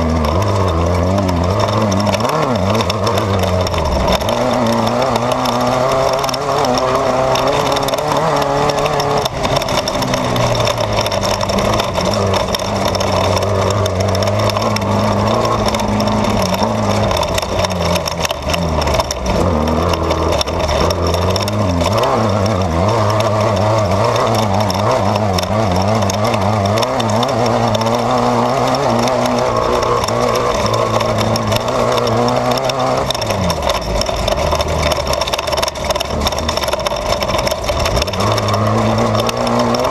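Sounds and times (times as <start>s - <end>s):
race car engine revving: 0.0s - 39.9s
road noise: 0.0s - 39.9s.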